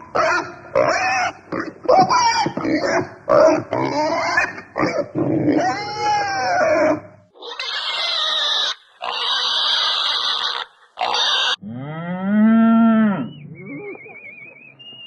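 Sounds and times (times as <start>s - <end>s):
animal squealing harshly: 2.2s - 11.6s
rising animal call: 5.6s - 15.0s.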